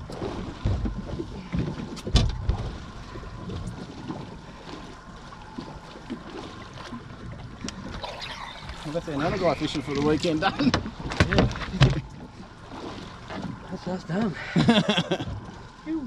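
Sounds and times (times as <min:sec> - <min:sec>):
water noise: 0:00.0 - 0:16.0
wind: 0:00.0 - 0:16.0
knocks on boat: 0:00.1 - 0:02.7, 0:10.6 - 0:12.2.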